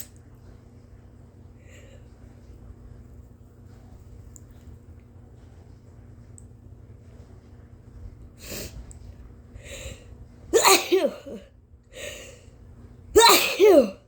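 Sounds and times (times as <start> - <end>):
woman breathing in sharply: 9.6 - 10.1, 11.9 - 12.5
woman sneezing: 10.6 - 11.5, 13.2 - 14.0.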